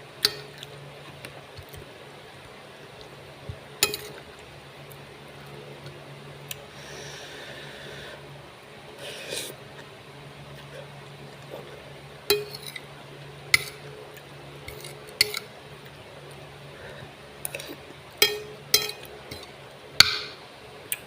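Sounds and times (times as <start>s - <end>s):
steady low hum: 0.0s - 21.0s
dishes and cutlery clinking: 3.8s - 4.2s, 12.3s - 12.9s, 14.7s - 15.5s, 17.5s - 20.4s.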